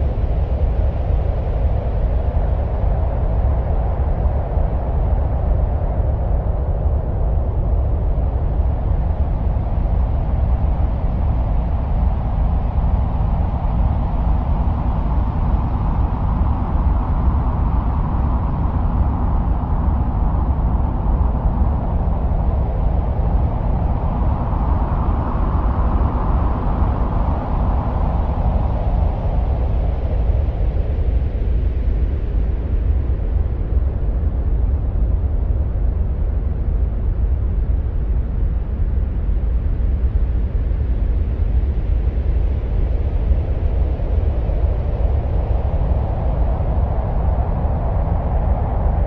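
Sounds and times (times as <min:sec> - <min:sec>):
deep wind-like rushing: 0:00.0 - 0:49.0.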